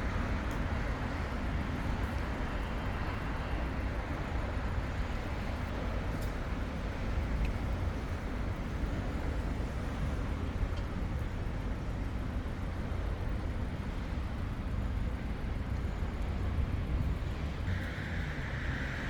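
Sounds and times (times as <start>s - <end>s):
passing cars rumble: 16.7s - 19.0s.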